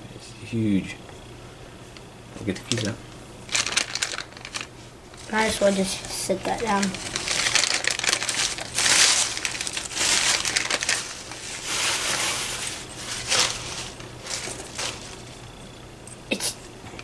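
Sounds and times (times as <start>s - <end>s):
packaging crinkling and rustling: 2.5s - 15.8s.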